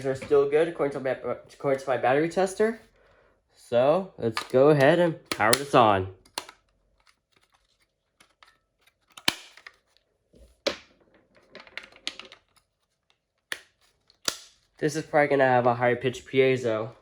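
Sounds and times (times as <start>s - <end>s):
batteries clicking into plastic compartment: 4.3s - 7.5s.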